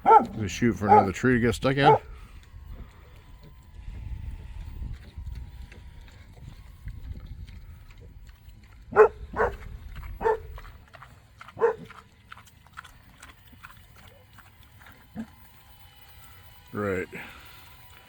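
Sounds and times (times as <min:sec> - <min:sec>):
dog barking: 0:00.0 - 0:01.2, 0:01.8 - 0:02.1, 0:08.9 - 0:09.6, 0:10.2 - 0:10.5, 0:11.6 - 0:11.9.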